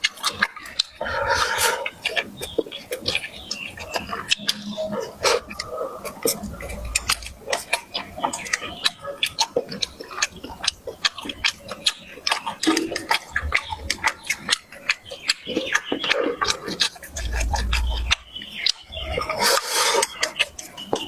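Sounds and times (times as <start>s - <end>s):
wet chewing and lip-smacking: 0.0s - 21.0s
low thumps: 17.1s - 18.2s.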